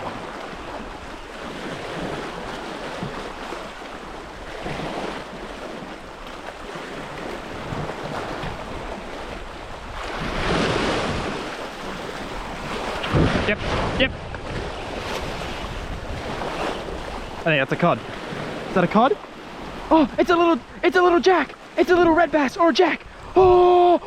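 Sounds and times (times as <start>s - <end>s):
sea waves washing against rocks: 0.0s - 24.0s
wind on microphone: 6.7s - 17.4s, 23.0s - 24.0s.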